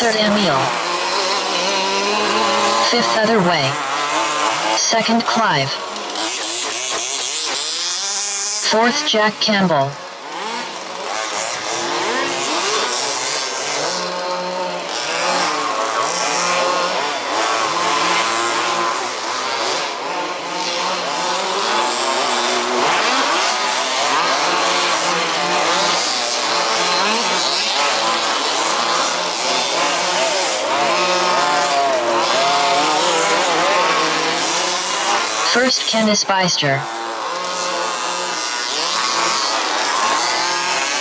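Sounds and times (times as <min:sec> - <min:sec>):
small two-stroke engines revving: 0:00.0 - 0:41.0.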